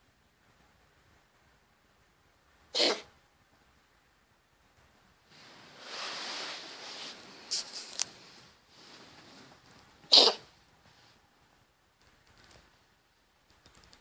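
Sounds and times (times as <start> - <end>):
cat coughing: 2.8 - 3.1, 10.1 - 10.5.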